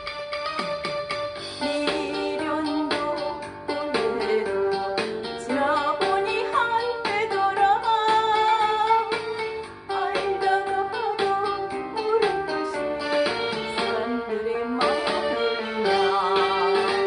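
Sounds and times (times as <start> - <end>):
backing band with steady beat: 0.0 - 8.4
woman singing with vibrato: 1.6 - 17.0.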